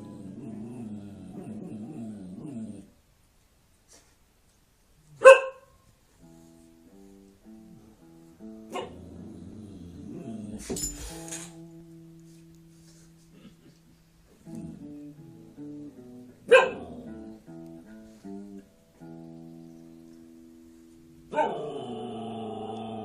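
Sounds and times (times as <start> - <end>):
dog barking: 5.2 - 5.8, 8.7 - 9.0, 16.5 - 16.9, 21.3 - 21.7
plucked guitar notes: 6.2 - 9.2, 14.3 - 21.3.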